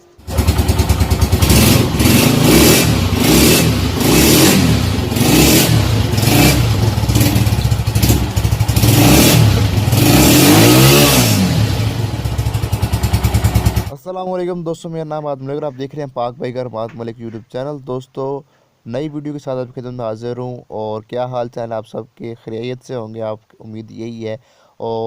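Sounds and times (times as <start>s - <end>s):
motorcycle engine revving: 0.0s - 13.9s.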